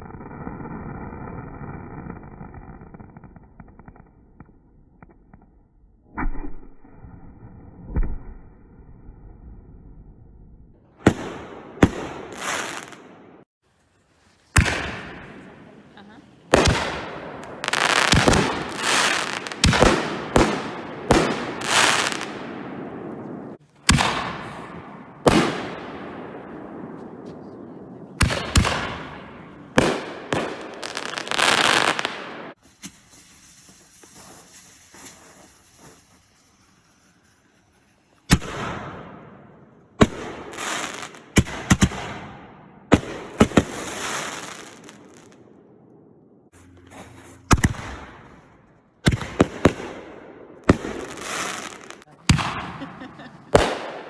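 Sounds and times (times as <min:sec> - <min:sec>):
fireworks bangs: 0:11.0 - 0:13.5, 0:14.2 - 0:54.0.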